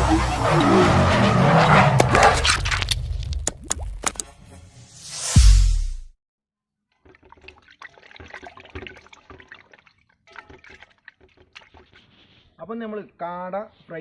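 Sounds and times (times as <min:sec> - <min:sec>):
water splashing and dripping: 0:02.8 - 0:04.3, 0:06.9 - 0:12.4.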